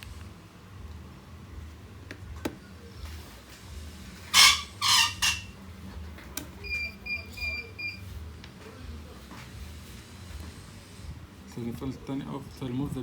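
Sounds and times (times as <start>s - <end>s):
short loud rasping noises: 4.3s - 5.5s.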